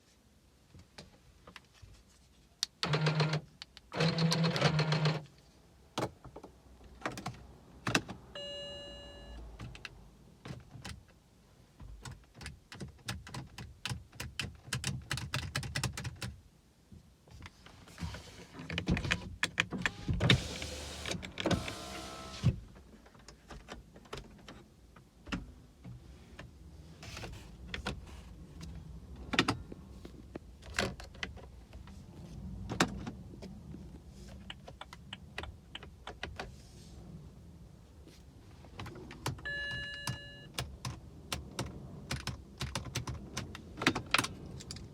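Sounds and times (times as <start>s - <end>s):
car chime: 8.4s - 9.4s.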